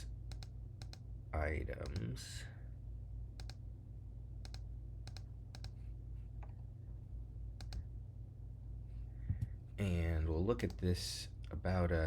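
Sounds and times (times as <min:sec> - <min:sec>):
low steady hum: 0:00.0 - 0:12.0
computer keys and mouse clicks: 0:00.3 - 0:01.0, 0:01.8 - 0:02.1, 0:03.4 - 0:03.6, 0:04.4 - 0:05.8, 0:07.6 - 0:07.8, 0:10.6 - 0:10.8.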